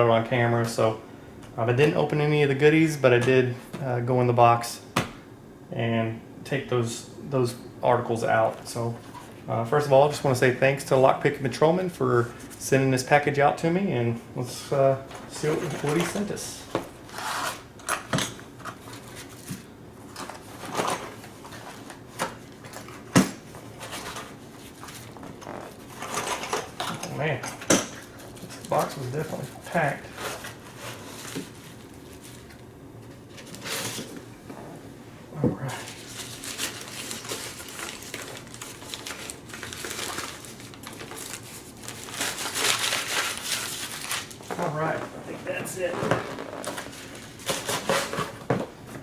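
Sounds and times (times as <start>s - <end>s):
packing material crinkling: 35.8s - 45.1s.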